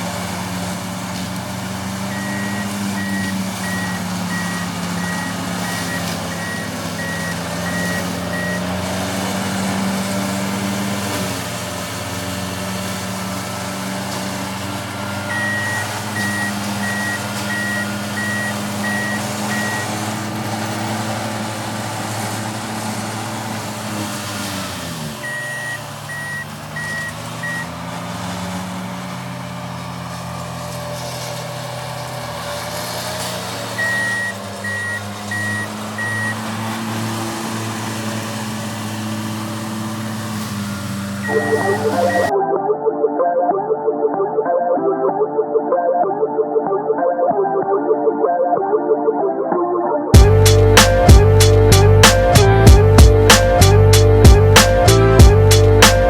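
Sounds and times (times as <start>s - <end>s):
diesel engine running hard: 0.0s - 42.3s, 50.1s - 56.0s
backup alarm beeping: 2.1s - 8.7s, 15.3s - 19.9s, 25.2s - 27.7s, 33.8s - 36.4s, 41.2s - 42.3s.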